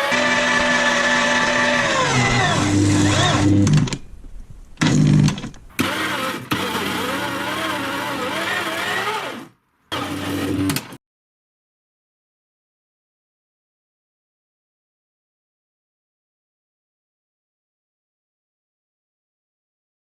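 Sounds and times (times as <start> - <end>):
meat grinder motor whining: 0.0 - 3.7, 5.7 - 10.8.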